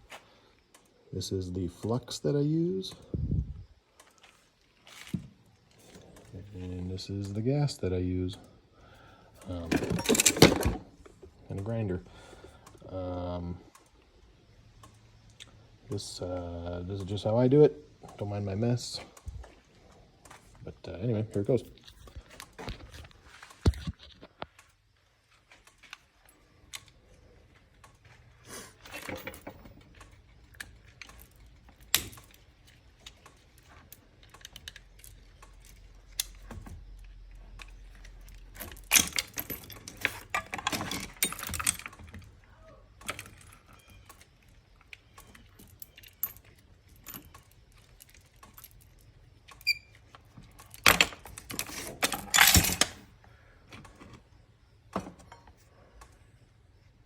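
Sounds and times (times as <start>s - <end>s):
metal cable and chain rattling: 9.4s - 11.0s, 28.8s - 53.1s.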